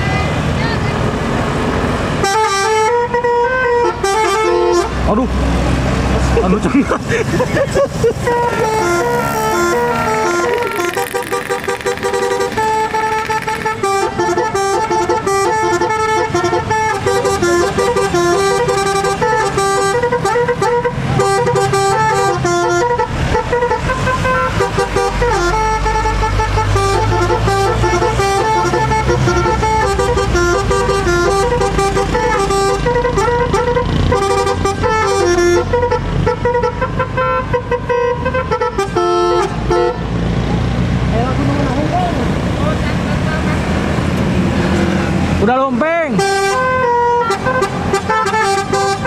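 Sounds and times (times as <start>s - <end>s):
multi-tone bus air horn tune: 2.2s - 5.0s, 8.2s - 40.2s, 46.1s - 49.0s.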